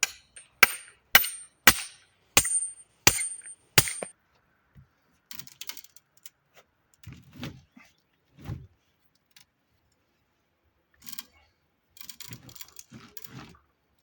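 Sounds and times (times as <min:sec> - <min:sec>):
hammer striking metal: 0:00.0 - 0:04.1.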